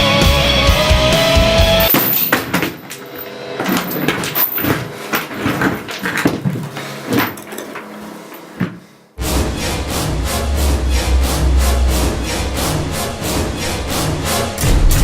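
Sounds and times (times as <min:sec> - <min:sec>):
loud music: 0:00.0 - 0:02.0, 0:09.2 - 0:15.0
knocks and handling noises: 0:01.8 - 0:09.0.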